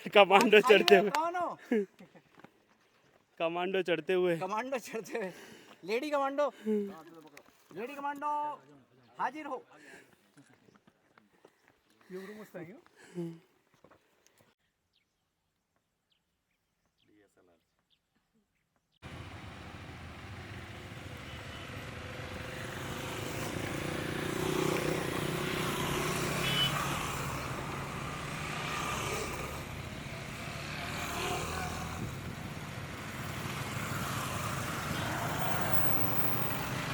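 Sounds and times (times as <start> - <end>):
motorcycle engines running: 19.0 - 36.9
rush of road noise: 19.0 - 36.9.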